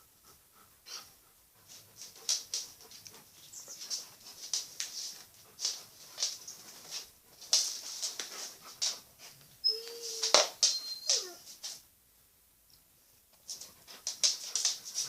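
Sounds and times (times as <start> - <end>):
dog panting: 0.0 - 9.4
dog whimpering: 9.6 - 11.5.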